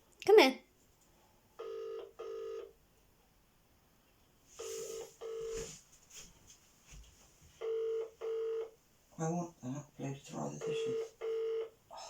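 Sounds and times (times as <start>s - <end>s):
telephone ringing tone: 1.6s - 2.8s, 4.6s - 5.7s, 7.6s - 8.8s, 10.6s - 11.8s.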